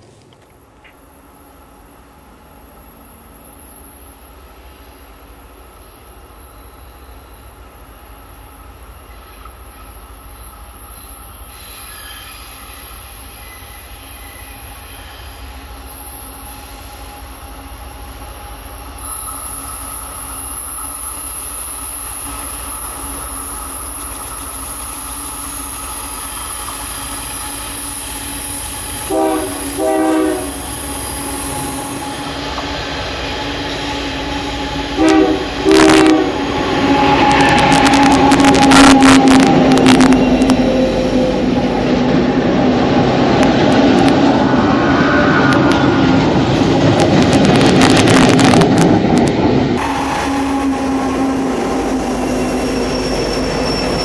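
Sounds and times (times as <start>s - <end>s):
steel wheels squealing on rails: 0.0s - 48.8s, 49.6s - 54.0s
train approaching: 0.0s - 54.0s
train horn blasts: 26.4s - 32.4s, 33.8s - 42.0s, 49.8s - 54.0s.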